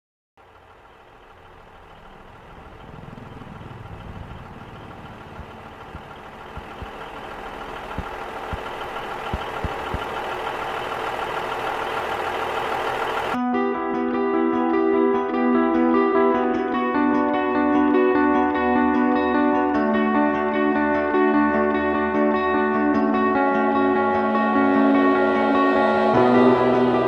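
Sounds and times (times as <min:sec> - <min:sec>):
harvest machinery engine running: 0:00.4 - 0:13.4.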